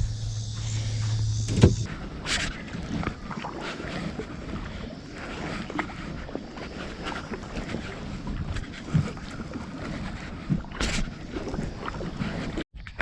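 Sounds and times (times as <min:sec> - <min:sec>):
low hum: 0:00.0 - 0:02.2
water noise: 0:00.0 - 0:13.0
kayak knocks: 0:01.2 - 0:03.1.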